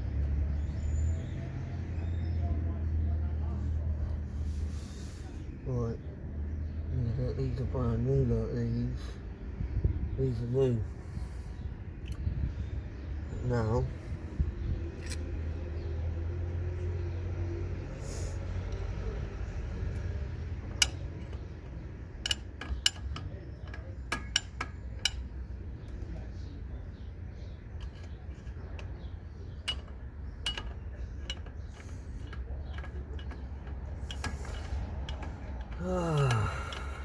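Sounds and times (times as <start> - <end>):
metal tools clinking: 14.9 - 15.5, 20.6 - 25.4, 27.7 - 37.0.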